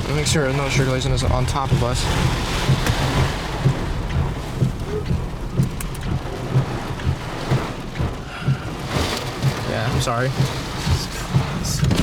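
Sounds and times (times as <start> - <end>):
gusty wind buffeting: 0.0 - 12.0
heavy rain on a vehicle: 0.0 - 12.0
sharp ticks of raindrops: 0.0 - 12.0.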